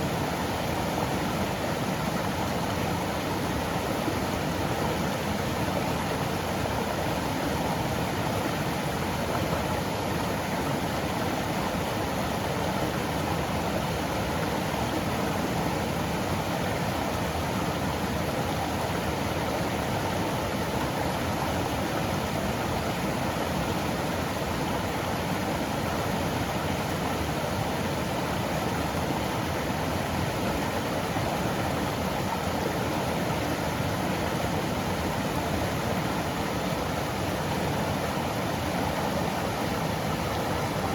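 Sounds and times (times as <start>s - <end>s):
stream rushing over rocks: 0.0s - 40.9s.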